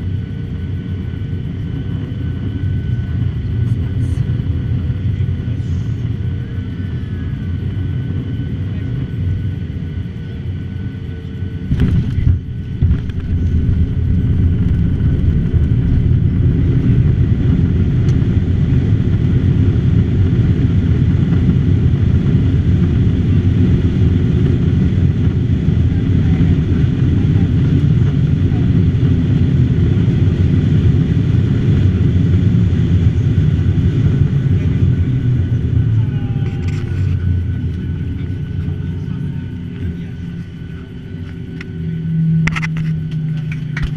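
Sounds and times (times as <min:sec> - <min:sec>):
airplane engine rumble: 0:00.0 - 0:43.9.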